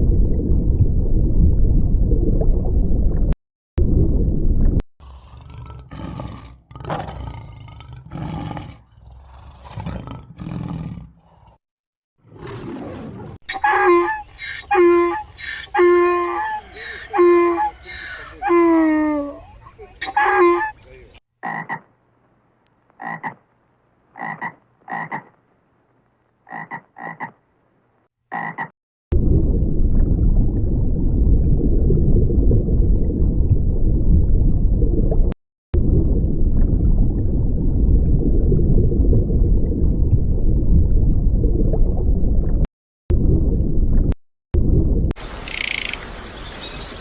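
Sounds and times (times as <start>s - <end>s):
croak-like animal calls: 21.4s - 21.9s, 23.0s - 23.4s, 24.2s - 25.4s, 26.5s - 27.4s, 28.3s - 28.7s, 45.3s - 47.0s.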